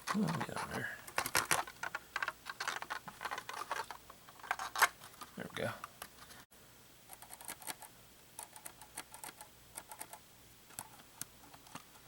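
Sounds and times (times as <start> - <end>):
small plastic parts clicking: 0.0 - 5.0, 7.1 - 12.0.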